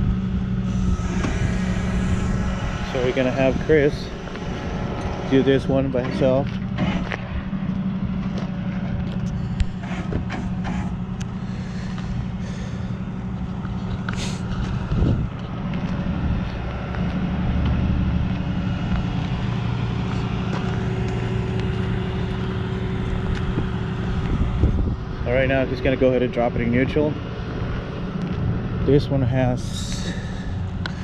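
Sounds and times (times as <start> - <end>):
truck engine running: 0.0 - 31.0.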